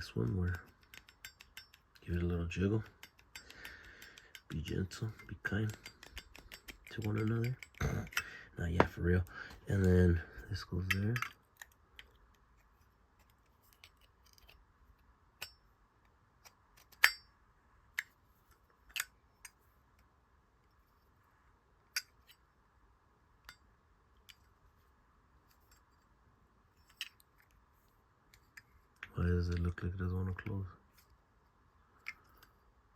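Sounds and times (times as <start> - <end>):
metallic clicks and taps: 0.0 - 9.6, 10.8 - 12.4, 15.4 - 17.3
faint steady hum: 0.0 - 32.9.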